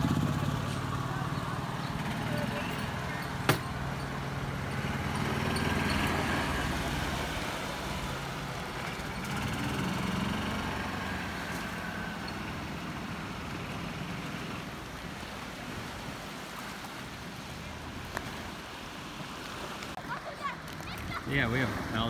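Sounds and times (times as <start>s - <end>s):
vehicle engine revving: 0.0s - 14.9s.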